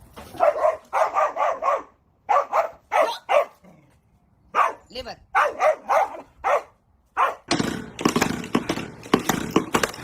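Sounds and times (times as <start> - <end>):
dog barking: 0.4 - 3.6, 4.5 - 7.5.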